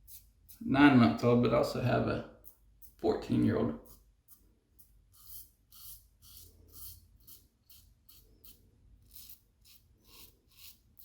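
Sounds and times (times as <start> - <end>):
razor scratching stubble: 5.1 - 11.0.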